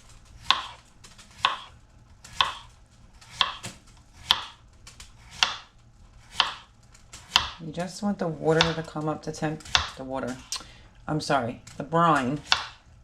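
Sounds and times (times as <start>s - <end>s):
knife slicing cucumber: 0.4s - 7.8s, 8.4s - 10.6s, 12.1s - 12.8s.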